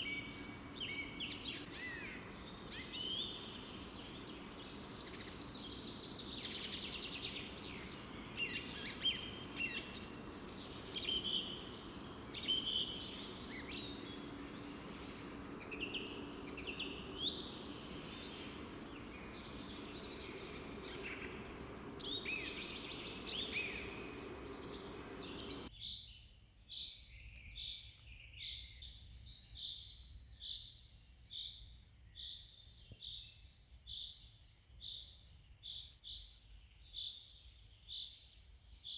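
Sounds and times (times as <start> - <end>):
steady low background hum: 0.0 - 25.7
songbirds chirping and trilling: 0.0 - 38.9.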